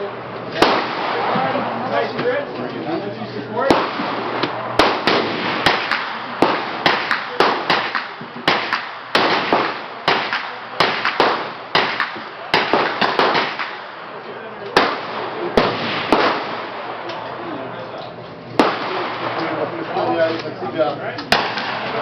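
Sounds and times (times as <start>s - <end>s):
gunshots with echo: 0.6s - 1.6s, 3.6s - 14.0s, 14.8s - 17.1s, 18.6s - 19.6s, 21.3s - 22.0s.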